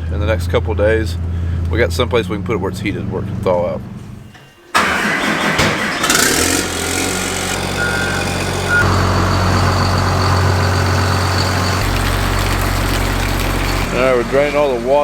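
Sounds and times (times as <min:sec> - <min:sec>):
engine idling hum: 0:00.0 - 0:05.1, 0:05.8 - 0:15.0
short high beeps: 0:07.8 - 0:11.8.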